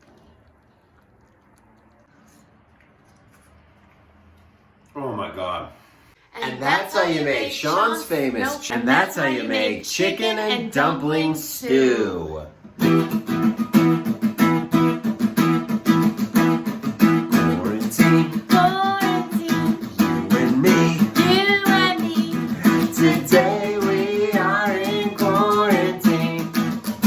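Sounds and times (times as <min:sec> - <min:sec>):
person singing: 0:06.4 - 0:10.7, 0:17.3 - 0:27.0
fast-strummed acoustic guitar: 0:12.8 - 0:27.0.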